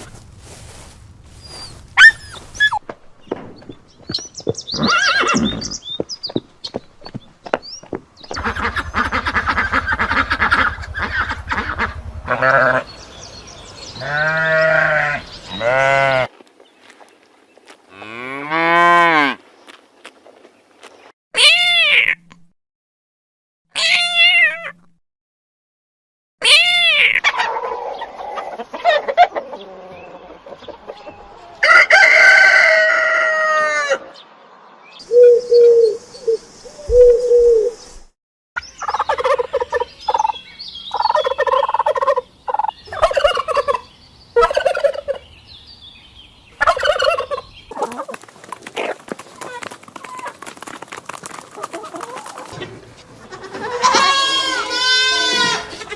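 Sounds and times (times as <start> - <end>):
short rapid poultry calls: 8.4 - 12.9, 53.2 - 55.9
roosters crowing: 8.4 - 16.3, 27.2 - 34.2, 38.8 - 45.2, 46.6 - 55.9.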